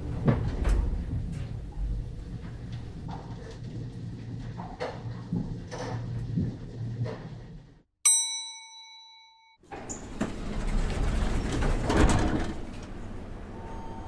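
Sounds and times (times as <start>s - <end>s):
elevator doors sliding open: 0.0s - 3.8s, 9.7s - 14.0s
elevator chime ding: 8.1s - 9.6s, 13.6s - 14.0s.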